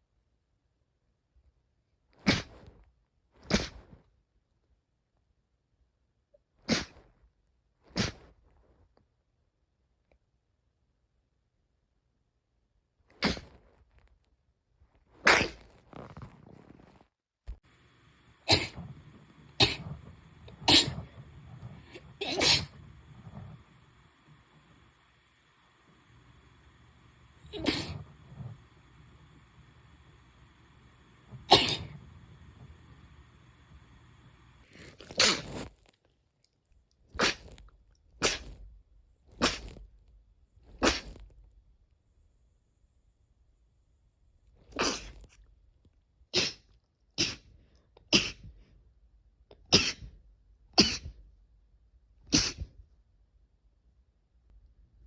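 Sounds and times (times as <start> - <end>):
person sneezing: 8.0 - 8.3, 13.2 - 13.6, 18.4 - 23.6, 27.4 - 28.6, 31.3 - 32.2, 34.9 - 35.7, 40.8 - 41.1, 46.4 - 46.6, 47.2 - 47.4, 48.1 - 48.5, 49.7 - 50.1, 50.8 - 51.2, 52.3 - 52.7
sharp intake of breath: 17.7 - 35.6.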